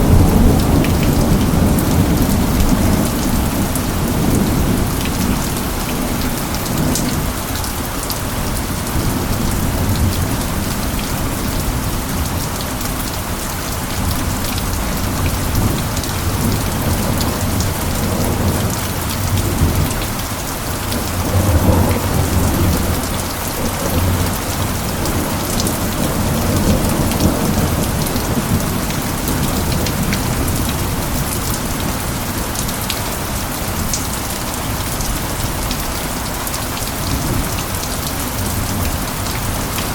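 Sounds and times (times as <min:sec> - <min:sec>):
heavy rain hissing: 0:00.0 - 0:39.9
rolling thunder: 0:20.8 - 0:32.4.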